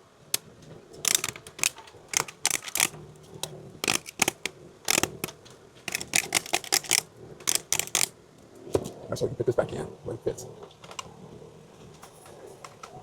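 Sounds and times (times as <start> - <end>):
knife scraping plastic: 3.8 - 8.1.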